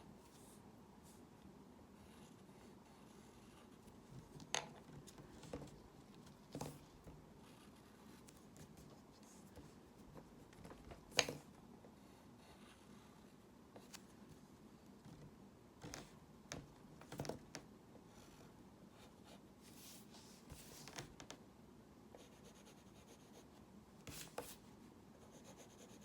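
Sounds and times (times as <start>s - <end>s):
low room hiss: 0.0s - 26.0s.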